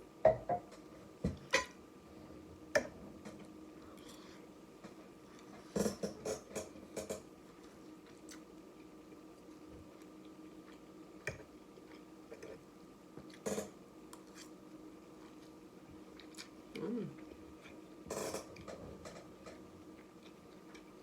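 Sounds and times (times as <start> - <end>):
person chewing noodles: 7.5 - 12.6, 14.1 - 17.9, 18.5 - 21.0.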